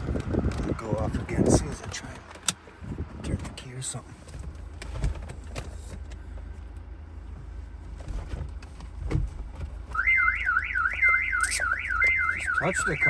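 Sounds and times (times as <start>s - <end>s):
car alarm warbling siren: 9.9s - 13.0s.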